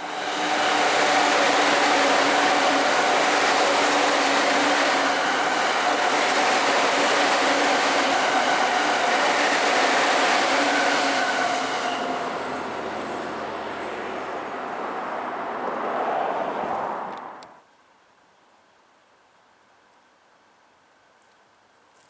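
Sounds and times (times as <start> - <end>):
electric train running past: 0.0 - 17.4.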